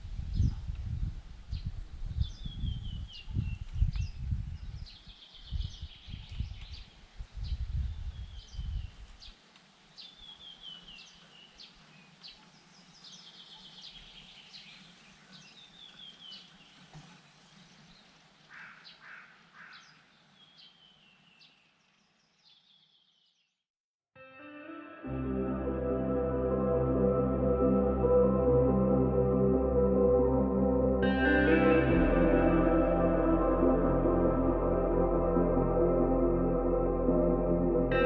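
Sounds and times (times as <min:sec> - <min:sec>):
songbird singing: 0:00.1 - 0:23.6
ambient music: 0:24.2 - 0:38.0
low rumble: 0:25.5 - 0:38.0.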